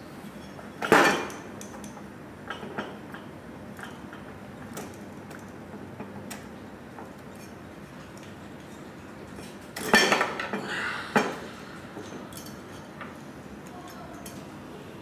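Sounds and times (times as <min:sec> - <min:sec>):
metallic clatter of bike parts: 0:00.4 - 0:10.6, 0:12.0 - 0:14.5
light metal clinks and clicks: 0:12.0 - 0:14.5.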